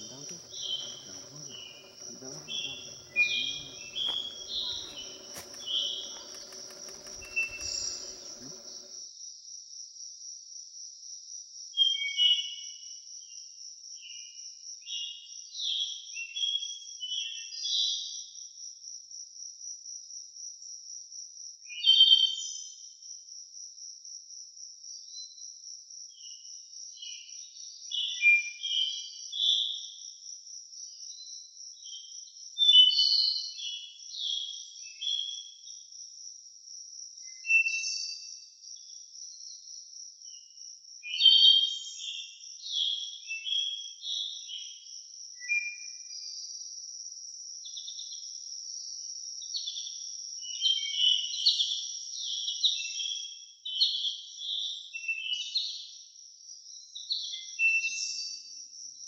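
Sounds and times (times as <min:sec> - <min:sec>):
birds chirping: 0:00.0 - 0:09.0
faint low hum: 0:00.0 - 0:09.0
insect trilling: 0:00.0 - 0:09.0.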